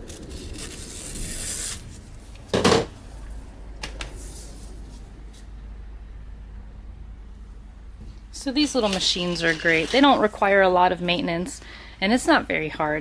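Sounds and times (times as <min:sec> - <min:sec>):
hands rubbing and rustling: 0:03.1 - 0:05.6.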